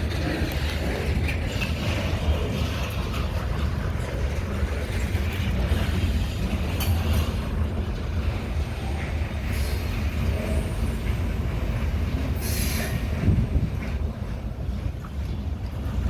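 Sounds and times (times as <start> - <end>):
diesel locomotives rumbling: 0.0 - 16.0.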